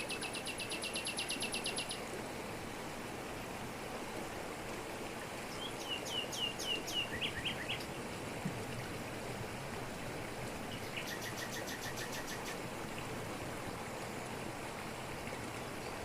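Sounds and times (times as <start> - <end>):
waterfall pouring over rocks: 0.0 - 16.0
bird chirping: 5.5 - 7.9, 10.8 - 12.6.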